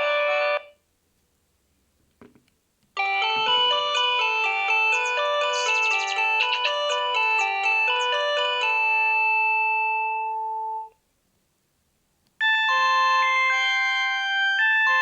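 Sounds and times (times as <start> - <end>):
phone ringtone melody: 0.0 - 0.7, 3.0 - 11.0, 12.4 - 15.0.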